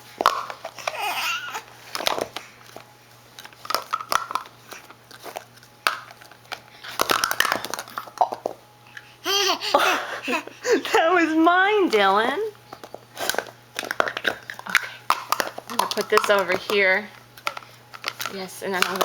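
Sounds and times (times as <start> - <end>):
plastic cups clicking together: 0.2 - 2.8, 3.4 - 9.0, 12.7 - 19.0
baby vocal sounds: 0.8 - 1.7, 9.2 - 10.7
woman's voice: 10.7 - 12.6, 15.7 - 17.2, 18.3 - 19.0.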